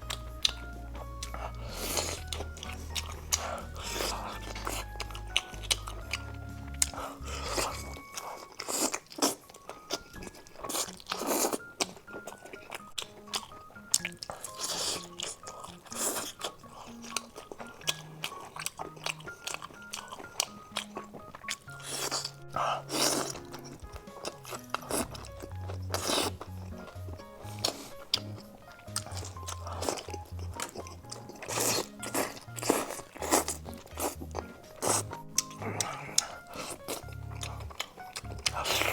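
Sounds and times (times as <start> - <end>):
background music with bass line: 0.0 - 8.0, 37.0 - 38.9
crunching and chewing crispy food: 0.0 - 38.9
soft background music: 0.0 - 38.9.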